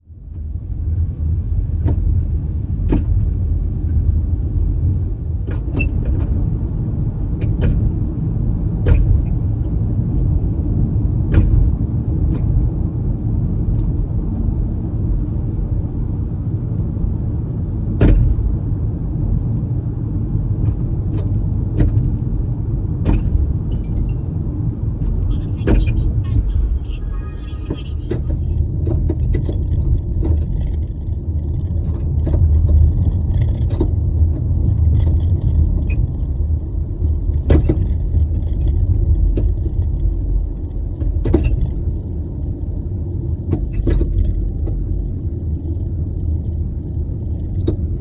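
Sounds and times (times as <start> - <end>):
low road rumble: 0.0 - 48.0.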